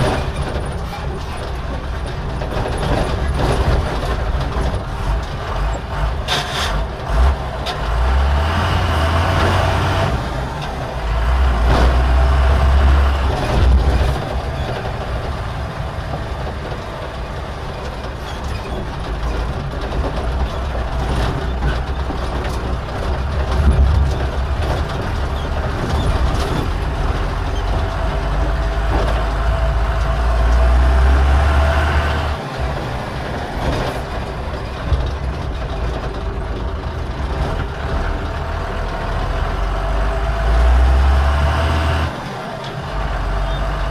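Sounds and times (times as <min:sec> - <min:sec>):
diesel engine revving under load: 0:00.0 - 0:43.9.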